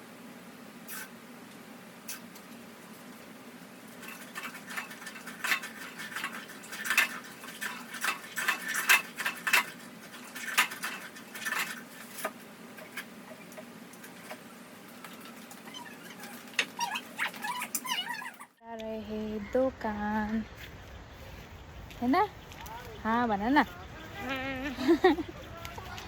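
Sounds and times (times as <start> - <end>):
dishes clattering and scraping: 3.9 - 14.4.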